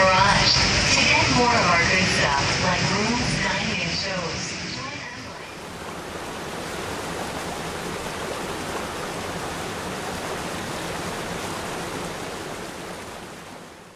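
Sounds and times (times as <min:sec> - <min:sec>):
waterfall roar: 0:04.8 - 0:13.9.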